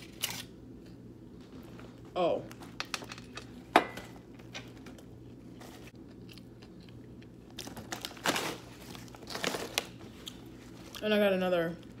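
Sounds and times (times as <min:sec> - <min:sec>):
chewing and crunching food: 0:05.6 - 0:08.2.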